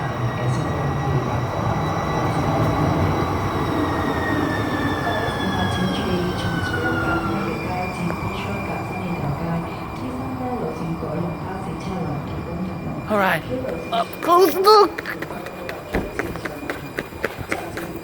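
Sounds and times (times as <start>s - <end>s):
light rail car rumble and whine: 0.0s - 13.9s.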